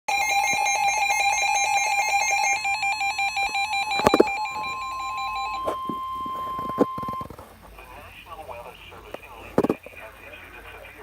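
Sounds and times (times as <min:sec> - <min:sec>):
two-tone alert signal: 0:00.1 - 0:07.4
pulsing electronic buzz: 0:00.2 - 0:07.6.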